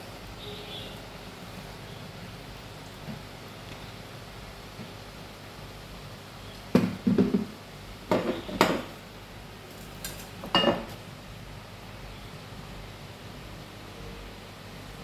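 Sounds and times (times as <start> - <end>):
dishes and utensils clattering: 8.1 - 9.0, 9.7 - 11.0.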